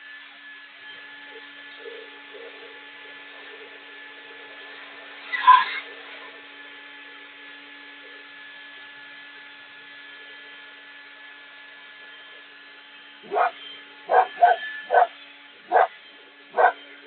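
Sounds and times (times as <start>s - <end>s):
steady hum: 0.0s - 17.0s
dog barking: 13.2s - 15.1s, 15.7s - 16.0s, 16.6s - 16.8s.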